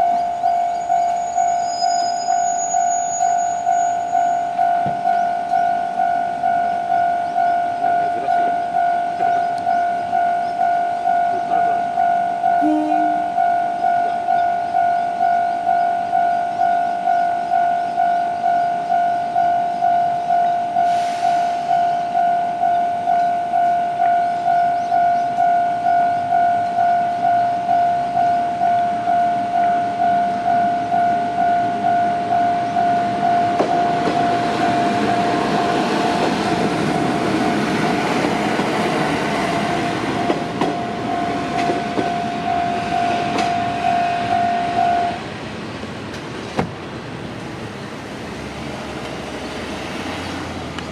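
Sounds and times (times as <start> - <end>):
level crossing warning bell: 0.0 - 45.3
diesel railcar passing: 0.0 - 50.9.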